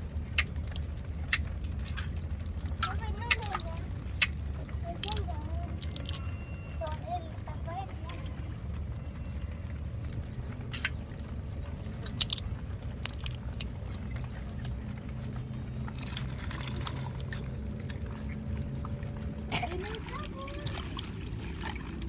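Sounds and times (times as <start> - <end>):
steady low hum: 0.0 - 22.0
crab shells snapping: 0.3 - 2.2, 5.0 - 6.3, 12.0 - 14.8.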